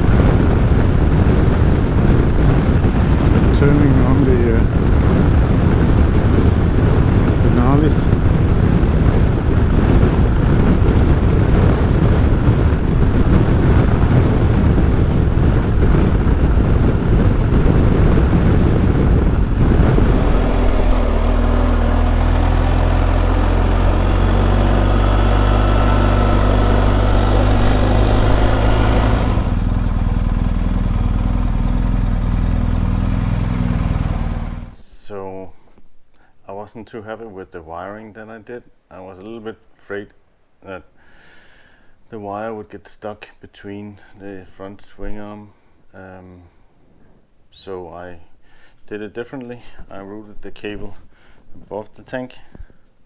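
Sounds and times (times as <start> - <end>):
motorcycle engine running: 0.0 - 34.8
wind noise on microphone: 0.0 - 34.9.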